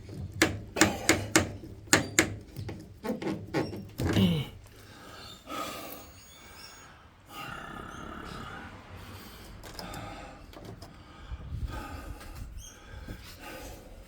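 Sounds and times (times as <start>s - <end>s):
person grunting: 4.2s - 4.6s
person breathing heavily: 7.0s - 14.0s.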